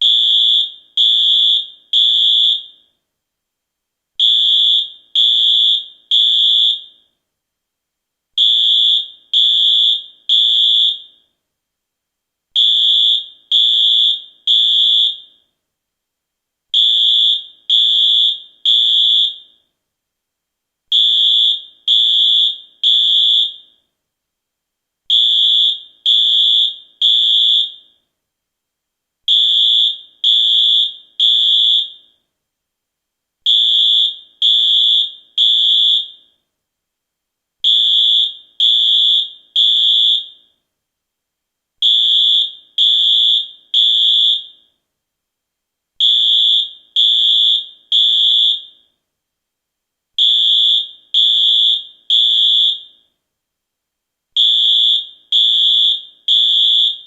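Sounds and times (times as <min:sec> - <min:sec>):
fire alarm beeping: 0:00.0 - 0:02.8, 0:04.2 - 0:07.0, 0:08.4 - 0:11.2, 0:12.6 - 0:15.4, 0:20.9 - 0:23.9, 0:25.1 - 0:27.9, 0:29.3 - 0:32.1, 0:33.5 - 0:36.3, 0:37.7 - 0:40.5, 0:41.8 - 0:44.7, 0:46.0 - 0:48.9, 0:50.2 - 0:53.0, 0:54.4 - 0:57.0.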